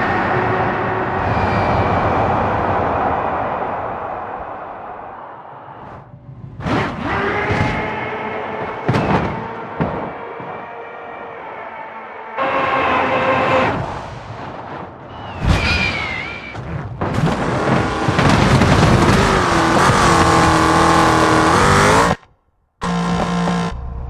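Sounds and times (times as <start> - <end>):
tire squeal: 0.0 - 3.6, 6.6 - 14.1, 15.1 - 16.7, 17.3 - 22.2
race car engine revving: 17.3 - 24.0.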